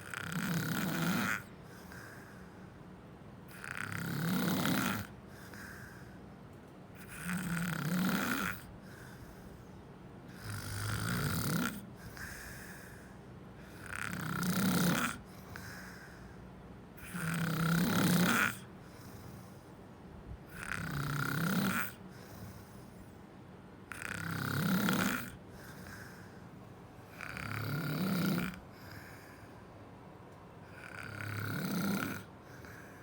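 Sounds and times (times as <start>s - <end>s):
person snoring: 0.0s - 2.6s, 3.5s - 6.2s, 7.0s - 9.6s, 10.3s - 16.3s, 17.0s - 19.6s, 20.5s - 23.0s, 23.9s - 26.4s, 27.1s - 29.6s, 30.6s - 33.0s
quiet breathing: 0.0s - 4.0s, 5.1s - 7.6s, 8.5s - 10.9s, 11.6s - 14.2s, 15.1s - 17.2s, 18.5s - 20.8s, 21.8s - 24.2s, 24.9s - 33.0s.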